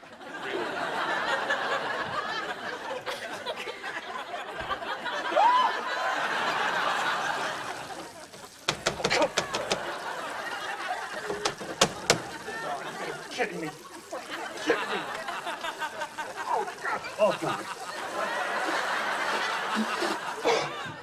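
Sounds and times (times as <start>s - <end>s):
studio audience laughing: 0.0s - 21.0s
rising whoop: 5.3s - 5.8s
sharp clicks and knocks: 8.7s - 10.0s, 11.2s - 12.5s.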